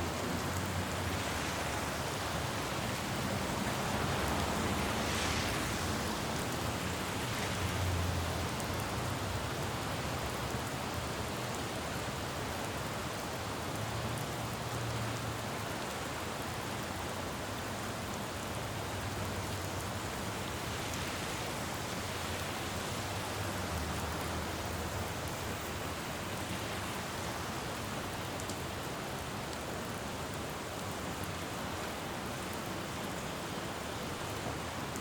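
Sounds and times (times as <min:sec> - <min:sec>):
rain falling on road: 0:00.0 - 0:35.0
traffic rumble: 0:18.7 - 0:29.3.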